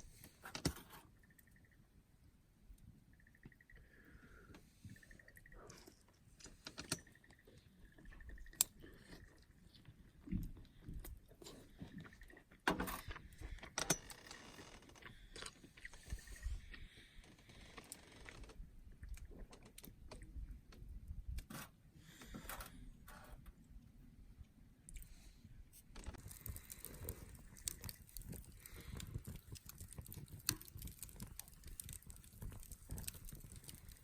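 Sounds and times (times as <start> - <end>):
small objects clicking and knocking: 25.9 - 34.0.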